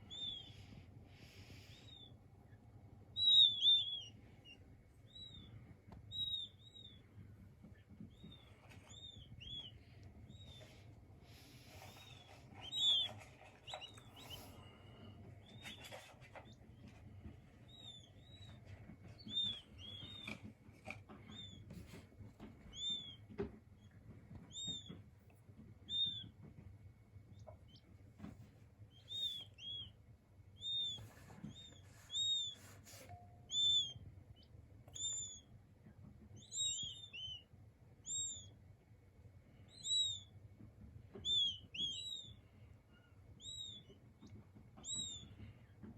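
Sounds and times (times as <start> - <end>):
quail chicks peeping: 0.0 - 45.9
faint taps or rustles: 15.2 - 29.5.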